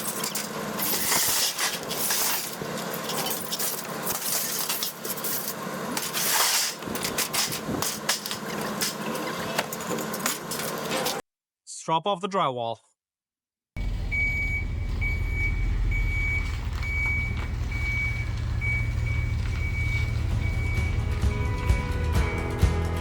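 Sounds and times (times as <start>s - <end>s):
scrap metal clanking: 0.0s - 11.2s
steady engine hum: 13.8s - 23.0s.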